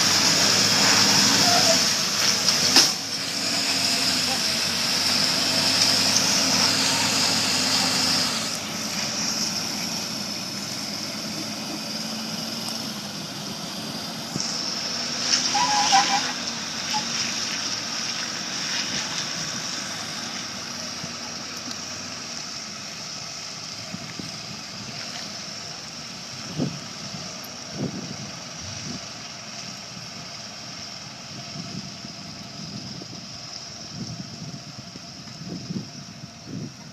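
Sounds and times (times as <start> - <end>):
truck engine straining: 0.0 - 36.9.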